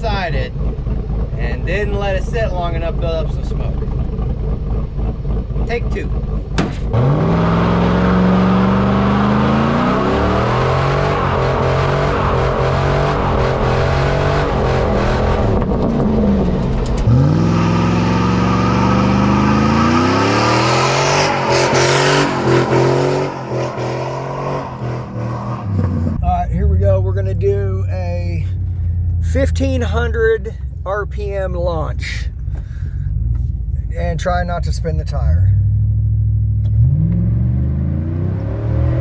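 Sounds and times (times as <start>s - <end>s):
car engine revving hard: 4.1s - 27.7s, 35.5s - 39.0s.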